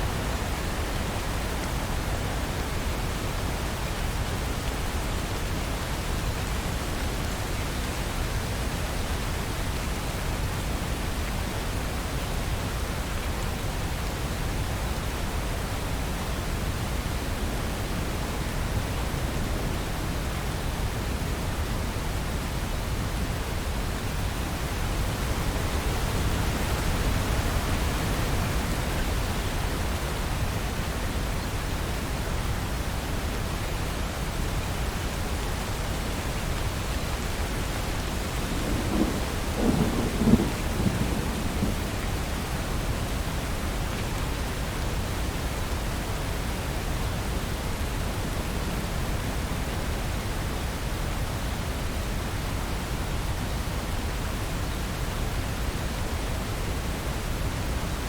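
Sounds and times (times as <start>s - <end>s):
steady rain falling: 0.0s - 58.0s
crackling thunder: 37.9s - 42.5s.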